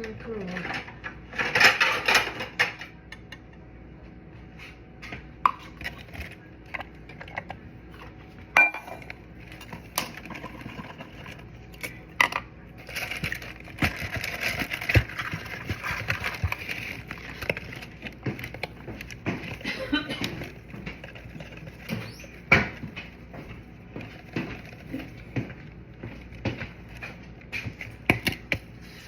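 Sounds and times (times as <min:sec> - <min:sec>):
utensils and dishes clinking: 0:00.0 - 0:03.3, 0:05.5 - 0:23.0.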